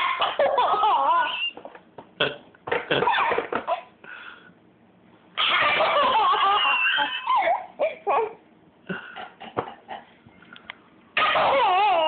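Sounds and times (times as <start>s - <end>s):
high-pitched laughter: 2.9s - 3.9s, 5.4s - 8.3s.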